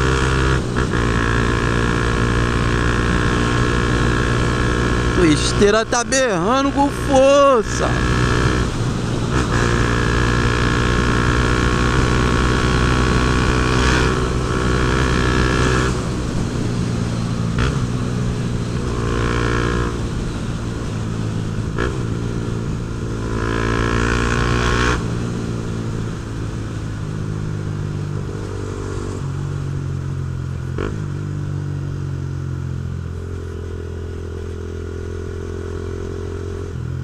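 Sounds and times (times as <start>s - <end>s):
motorcycle engine bellowing: 0.0s - 29.1s.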